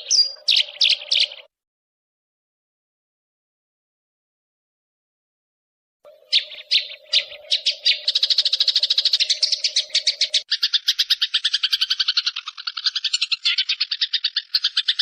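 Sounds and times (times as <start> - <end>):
songbird singing: 0.0 - 1.5, 6.1 - 15.0.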